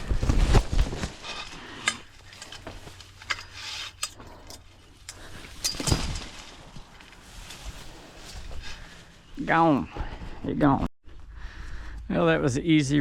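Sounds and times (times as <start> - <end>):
metal trap chain clinking: 1.8 - 6.4.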